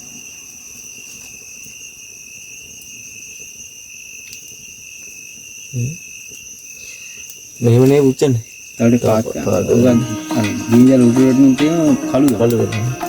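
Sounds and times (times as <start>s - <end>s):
crickets trilling: 0.0s - 13.0s.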